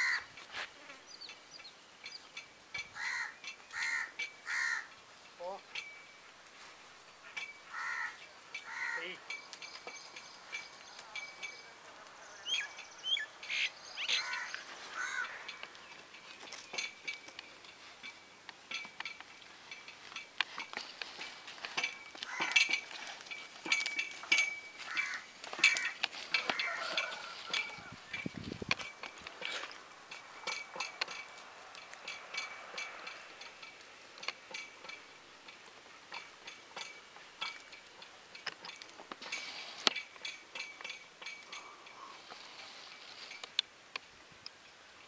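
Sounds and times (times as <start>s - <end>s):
birds chirping: 1.0s - 18.5s
clicks and clinks: 15.2s - 43.7s.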